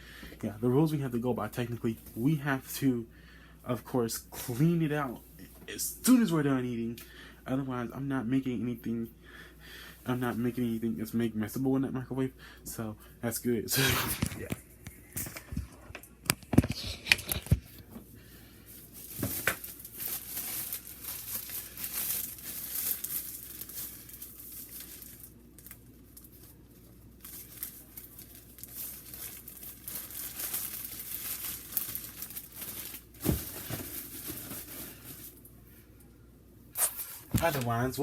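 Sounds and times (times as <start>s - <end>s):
packaging crinkling: 18.8s - 35.5s, 36.8s - 38.0s.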